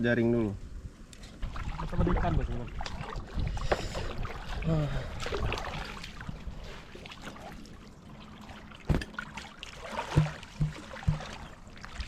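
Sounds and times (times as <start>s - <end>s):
water splashing around a boat: 1.3s - 12.0s
sharp knock: 8.9s - 9.1s.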